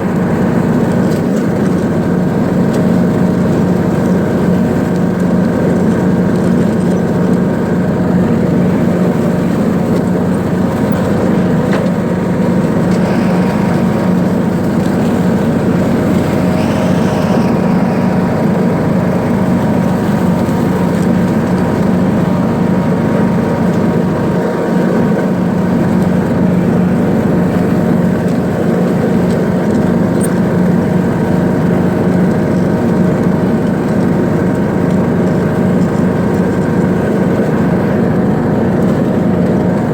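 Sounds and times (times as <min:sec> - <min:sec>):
lawn mower engine running: 0:07.5 - 0:24.3.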